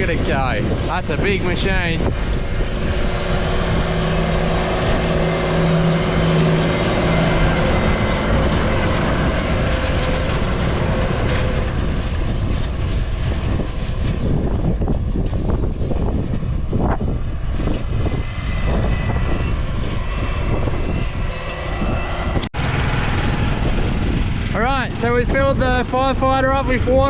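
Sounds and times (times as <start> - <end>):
baler running noise: 0.0 - 16.3, 21.8 - 27.0
tractor engine drone: 0.0 - 27.0.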